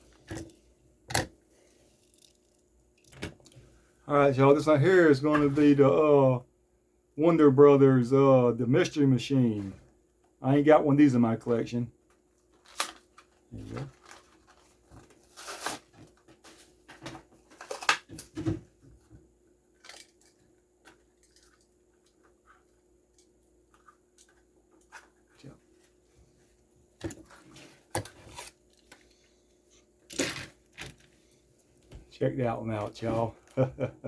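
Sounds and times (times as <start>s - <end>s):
plastic packaging crackling: 12.5s - 16.2s.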